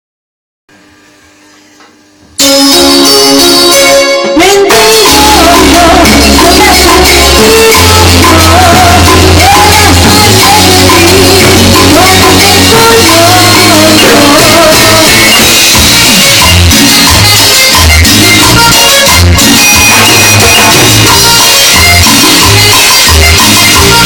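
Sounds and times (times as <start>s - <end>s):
latin dance band music: 2.4s - 24.0s
deep bass line: 5.0s - 24.0s.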